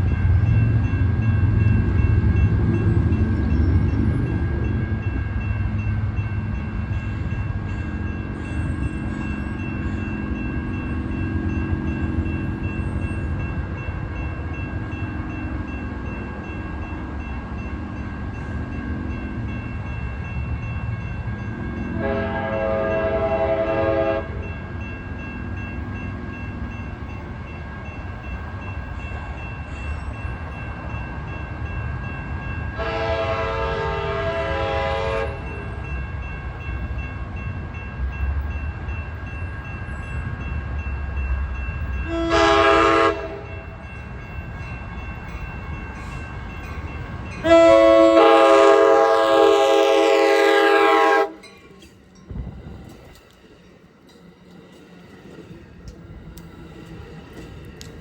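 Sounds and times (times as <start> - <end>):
train rumbling: 0.0 - 58.0
locomotive air horn: 22.0 - 24.4, 32.8 - 35.4, 42.1 - 43.5, 47.4 - 51.4.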